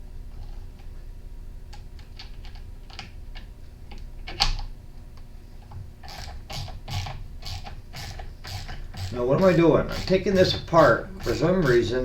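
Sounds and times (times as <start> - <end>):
parts being handled: 5.6 - 12.0.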